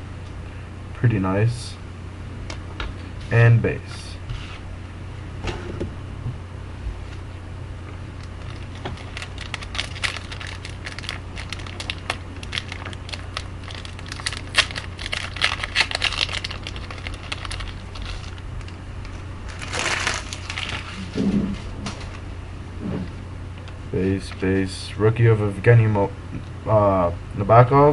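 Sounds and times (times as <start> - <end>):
steady low hum: 0.0 - 27.9
card wrappers crinkling: 8.2 - 21.2.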